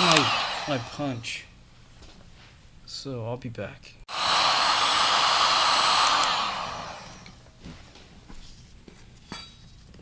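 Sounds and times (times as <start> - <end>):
heat gun blowing: 0.0 - 1.4, 4.1 - 7.4.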